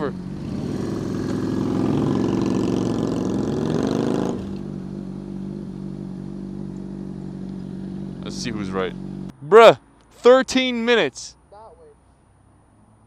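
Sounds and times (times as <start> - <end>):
motorcycle engine: 0.0 - 9.8.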